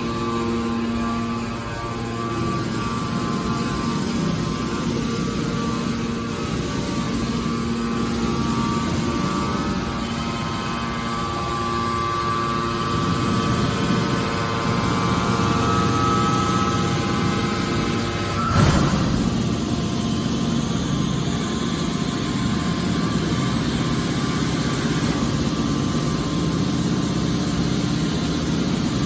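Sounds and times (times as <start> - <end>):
hydraulic baler motor drone: 0.0 - 29.0
loud bang: 18.3 - 20.2.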